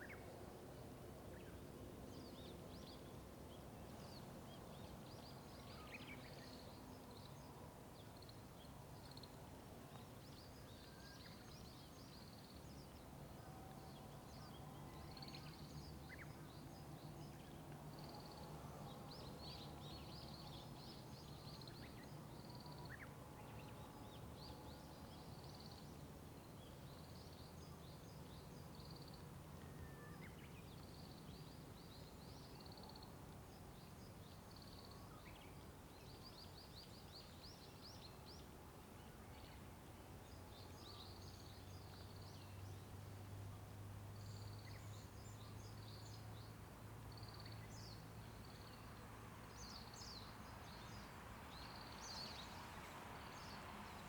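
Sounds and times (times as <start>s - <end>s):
songbirds chirping: 1.3s - 54.0s.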